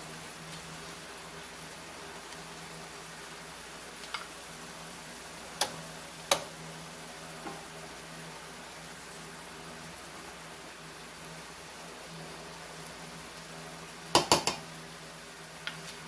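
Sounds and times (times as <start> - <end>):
garlic and onion sizzling: 0.0 - 16.0
utensil knocking against pan: 14.2 - 14.6.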